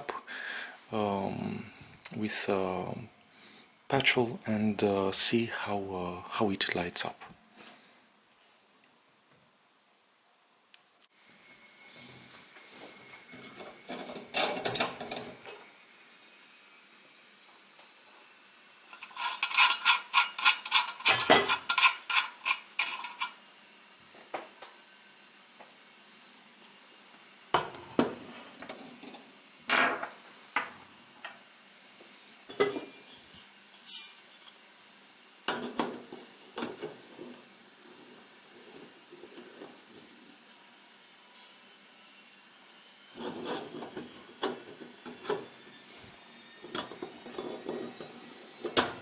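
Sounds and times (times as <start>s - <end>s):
metal lantern parts clicking: 18.9s - 23.4s.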